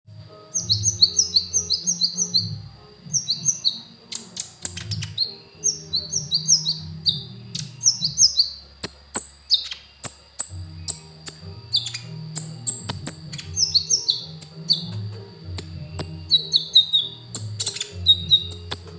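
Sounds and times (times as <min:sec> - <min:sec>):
bird chirping rapidly: 0:00.5 - 0:18.9
sharp clicks: 0:04.1 - 0:05.2.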